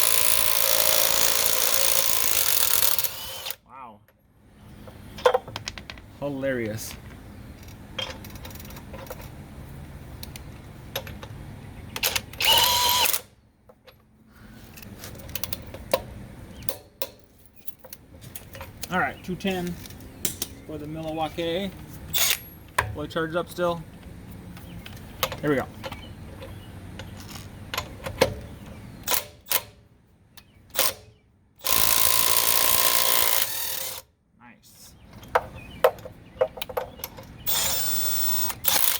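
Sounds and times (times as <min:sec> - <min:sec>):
tools clicking and knocking: 0:04.8 - 0:06.1, 0:07.0 - 0:09.4, 0:35.2 - 0:37.6
impact wrench whine: 0:12.4 - 0:13.3, 0:37.5 - 0:38.9.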